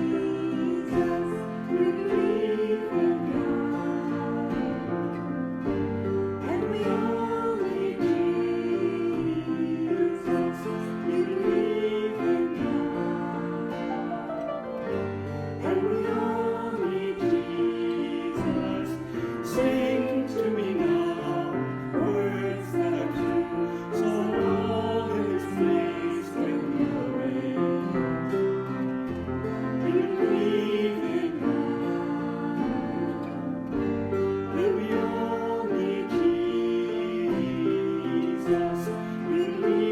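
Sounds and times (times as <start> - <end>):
strummed acoustic guitar: 0.0 - 39.9
voices singing together: 0.0 - 39.9.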